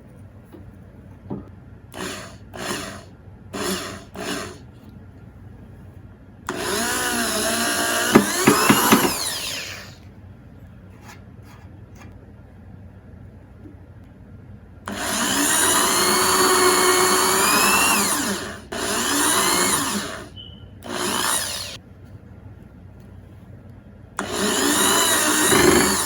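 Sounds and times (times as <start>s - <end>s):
small electric power tool running: 6.5s - 10.0s, 14.9s - 21.8s, 24.2s - 26.0s.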